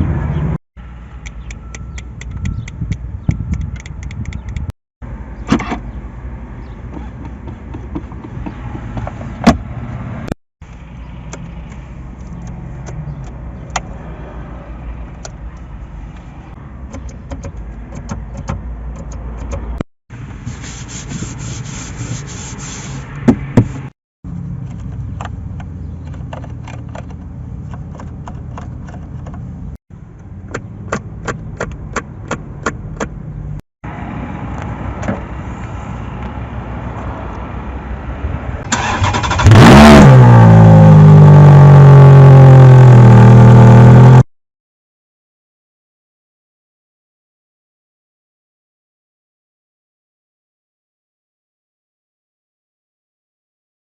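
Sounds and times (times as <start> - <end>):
sharp clicks: 1.2 - 4.7.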